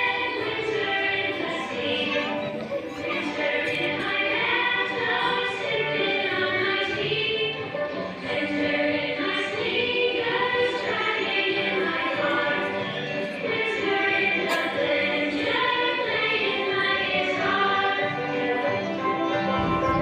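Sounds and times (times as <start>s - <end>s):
children singing: 0.0s - 20.0s.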